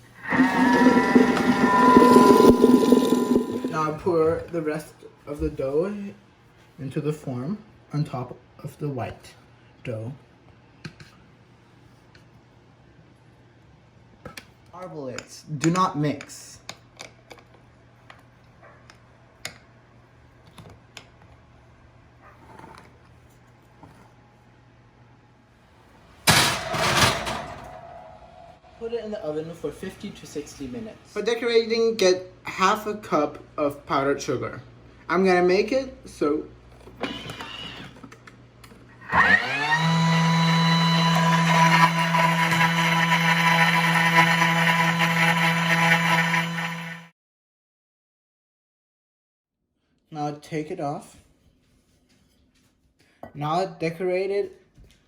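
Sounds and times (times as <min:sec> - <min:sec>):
utensil scraping batter: 0:00.0 - 0:04.0
electric blender motor running: 0:00.2 - 0:03.8, 0:39.0 - 0:47.1.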